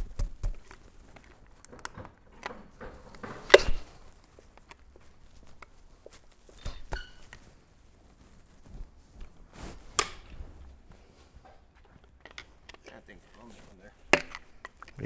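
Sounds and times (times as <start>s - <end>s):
hand tools clinking on metal: 6.5s - 7.5s.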